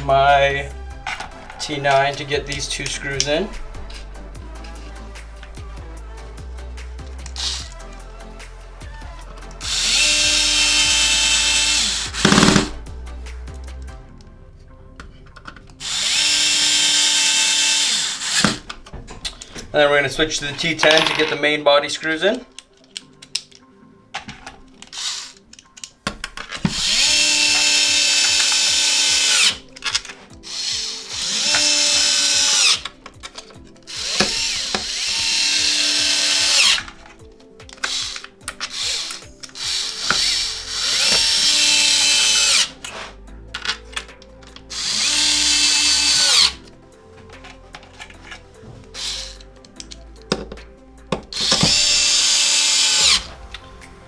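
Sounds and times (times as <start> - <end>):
electric screwdriver whine: 7.1 - 8.0, 9.4 - 12.8, 15.8 - 18.8, 24.9 - 25.5, 26.6 - 37.1, 37.8 - 43.1, 44.6 - 46.6, 48.9 - 49.8, 51.3 - 53.7
handling clicks: 22.5 - 27.0, 49.3 - 51.8.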